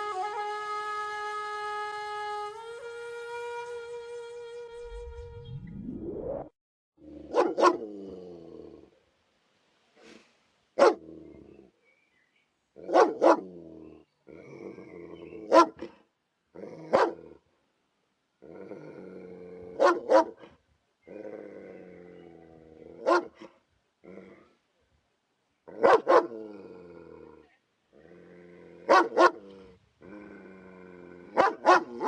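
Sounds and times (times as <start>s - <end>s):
dog growling: 7.0s - 9.0s, 13.3s - 15.6s, 18.4s - 20.1s, 21.0s - 23.2s, 24.0s - 24.6s, 26.2s - 32.0s
dog barking: 7.3s - 7.9s, 10.8s - 11.0s, 12.8s - 13.5s, 15.5s - 16.0s, 16.9s - 17.3s, 19.8s - 20.5s, 23.0s - 23.6s, 25.7s - 26.4s, 28.9s - 29.4s, 31.3s - 32.0s.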